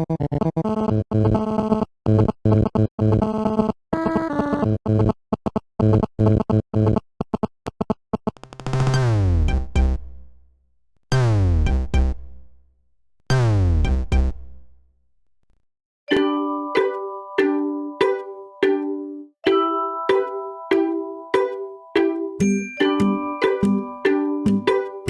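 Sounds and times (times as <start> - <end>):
synthesizer melody with drum beat: 20.0 - 25.0.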